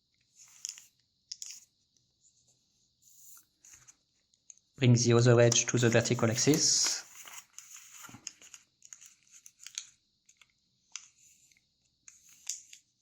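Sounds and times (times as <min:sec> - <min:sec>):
paper folding rustles and crackles: 0:05.4 - 0:10.4.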